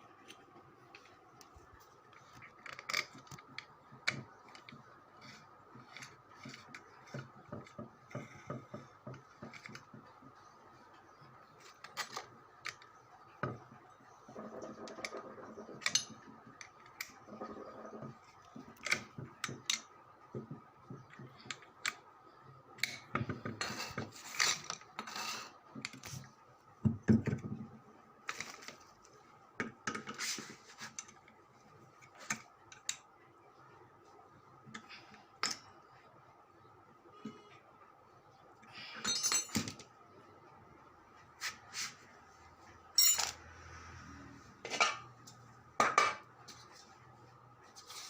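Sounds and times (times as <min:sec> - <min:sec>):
metallic clinks of tools: 0:39.0 - 0:39.7, 0:43.0 - 0:43.4.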